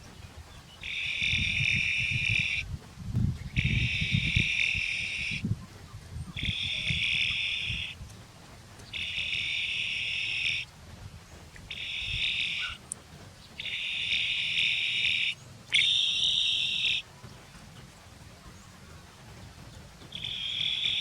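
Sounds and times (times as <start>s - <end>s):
buzzing animal calls: 0.8s - 2.7s, 3.6s - 5.4s, 6.4s - 8.0s, 8.9s - 10.7s, 11.7s - 12.9s, 13.6s - 17.0s, 20.1s - 21.0s.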